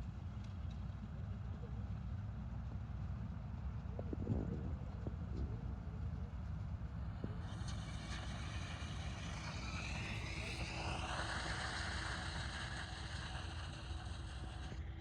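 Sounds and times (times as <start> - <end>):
combine harvester engine rumble: 0.2 - 15.0
mechanical whine and hiss: 5.1 - 15.0.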